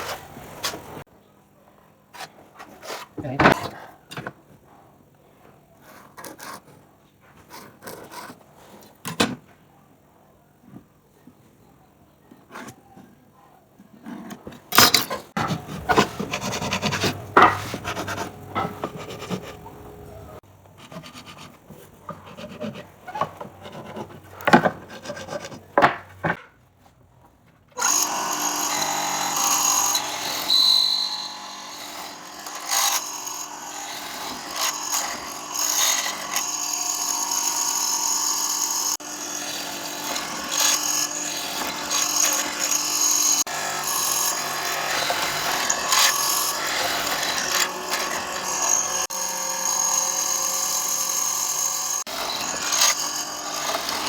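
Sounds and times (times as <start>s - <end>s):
wooden pieces knocked and scraped: 14.0s - 20.0s, 20.8s - 26.9s
power tool running on wood: 27.8s - 54.0s.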